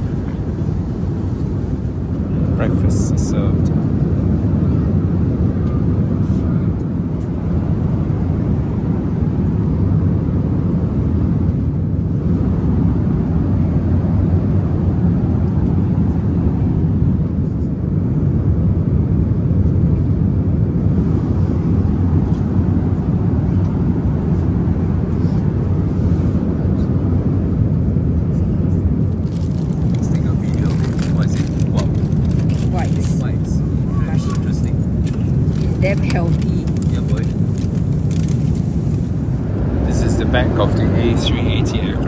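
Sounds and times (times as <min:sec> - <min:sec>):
airplane cabin engine rumble: 0:00.0 - 0:42.0.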